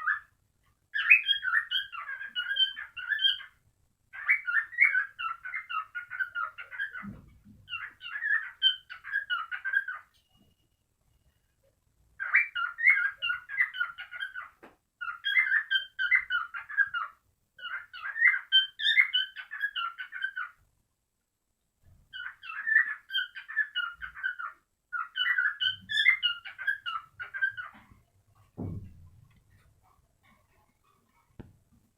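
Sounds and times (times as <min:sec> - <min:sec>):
cockatiel warbling and whistling: 0:00.0 - 0:00.3, 0:00.9 - 0:10.2, 0:12.2 - 0:20.6, 0:22.1 - 0:27.8.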